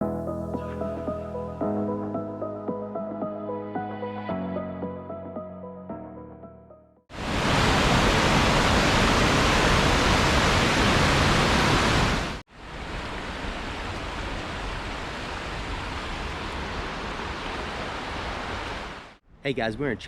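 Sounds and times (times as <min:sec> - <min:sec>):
quieter rushing water: 0:07.1 - 0:19.2
waterfall rushing: 0:07.1 - 0:19.2.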